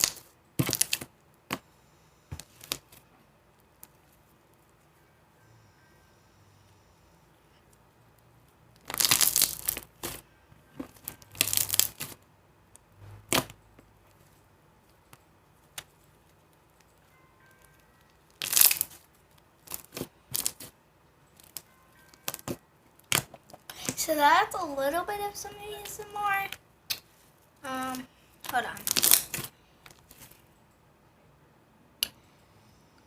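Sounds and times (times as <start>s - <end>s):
slime being squished by hand: 0.0s - 1.6s, 8.8s - 10.2s, 10.8s - 12.2s, 18.3s - 19.0s, 19.6s - 20.7s, 28.4s - 30.3s.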